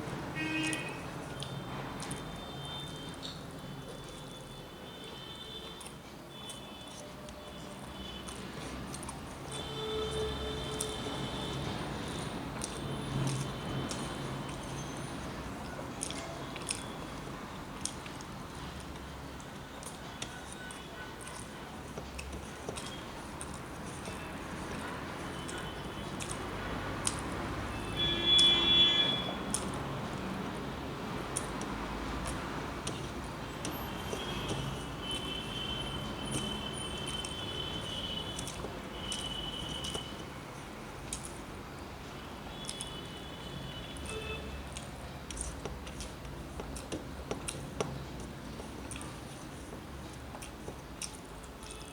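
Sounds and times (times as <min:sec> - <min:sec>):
person chewing food: 0:00.0 - 0:28.5, 0:29.2 - 0:51.9
fingers mixing rice on plate: 0:19.8 - 0:27.5, 0:31.2 - 0:40.2, 0:44.7 - 0:51.8
wet mouth clicks: 0:31.2 - 0:40.2, 0:42.5 - 0:43.1, 0:44.7 - 0:51.9.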